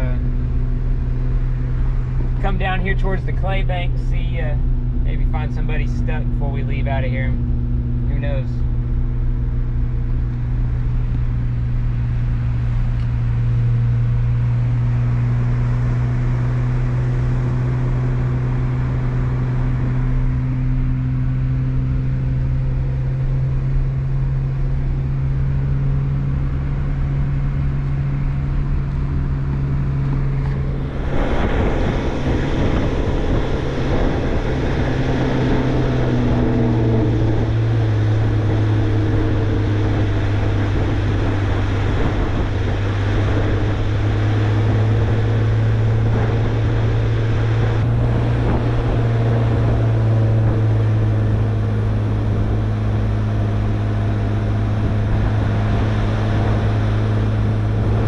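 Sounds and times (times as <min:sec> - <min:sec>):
car engine droning: 0:00.0 - 0:58.0
rushing noise: 0:28.5 - 0:58.0.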